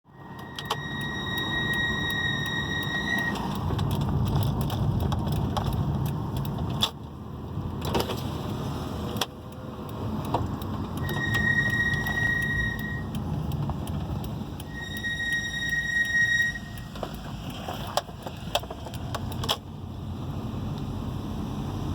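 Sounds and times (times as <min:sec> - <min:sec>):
road and tyre noise: 0:00.0 - 0:21.9
brakes squealing: 0:00.1 - 0:07.0, 0:07.8 - 0:21.9.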